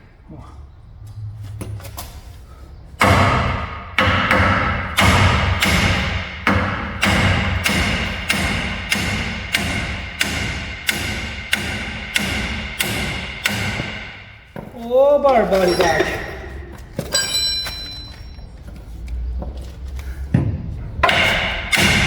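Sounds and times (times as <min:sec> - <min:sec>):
sledgehammer striking steel: 0:03.0 - 0:14.6, 0:21.0 - 0:22.0.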